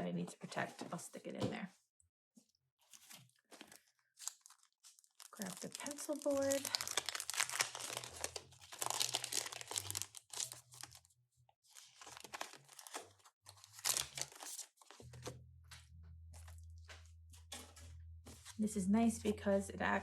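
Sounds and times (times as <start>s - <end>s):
plastic and paper crinkling: 2.9s - 11.0s, 11.7s - 15.4s.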